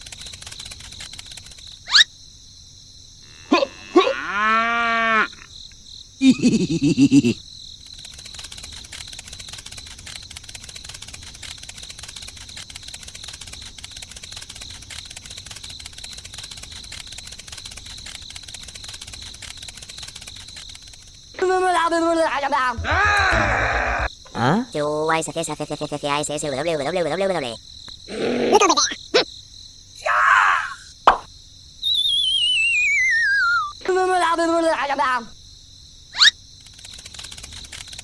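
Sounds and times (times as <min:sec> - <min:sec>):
pitched call rising and falling: 0:32.0 - 0:33.7.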